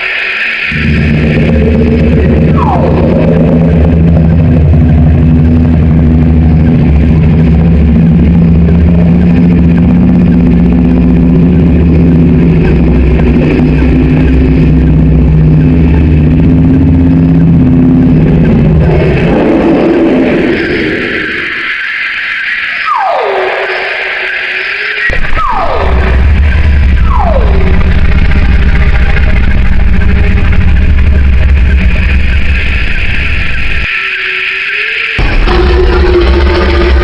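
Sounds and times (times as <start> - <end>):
short falling whine: 0.0 - 33.9, 35.2 - 37.0
low rumbling creature drone: 0.7 - 22.1, 23.0 - 33.9, 35.2 - 37.0.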